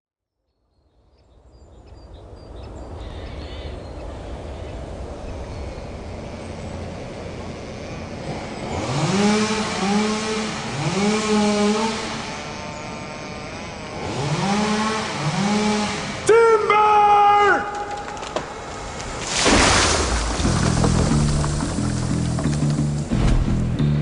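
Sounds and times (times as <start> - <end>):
chainsaw revving: 5.4 - 16.3, 19.8 - 23.6.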